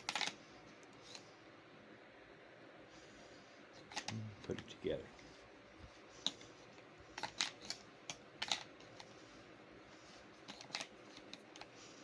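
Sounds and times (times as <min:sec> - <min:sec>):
plastic parts clicking together: 0:00.0 - 0:00.4, 0:03.8 - 0:04.2, 0:07.2 - 0:09.1, 0:10.4 - 0:11.7.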